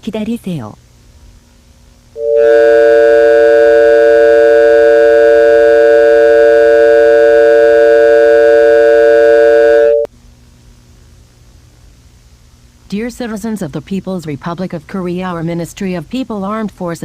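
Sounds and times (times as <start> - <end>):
electronic emergency alert tone: 2.2 - 10.1.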